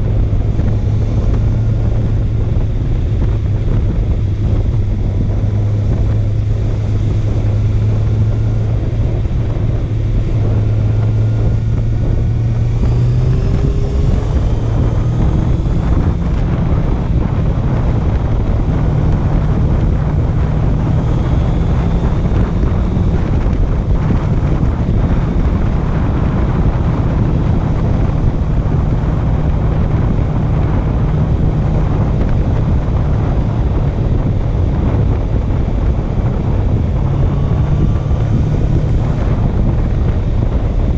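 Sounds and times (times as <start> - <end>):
motorcycle engine running: 0.0 - 40.9
wind rush on microphone: 0.0 - 40.9.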